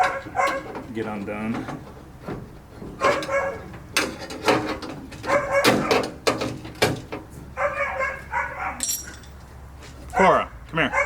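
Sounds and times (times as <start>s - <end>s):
dog barking: 0.0s - 0.7s, 3.0s - 3.7s, 5.2s - 6.0s, 7.6s - 8.8s, 10.1s - 11.0s.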